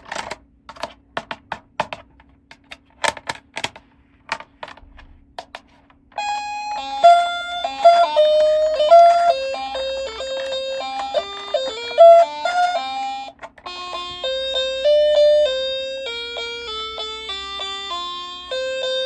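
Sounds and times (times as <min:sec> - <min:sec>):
simple melody of held notes: 0:06.2 - 0:19.0.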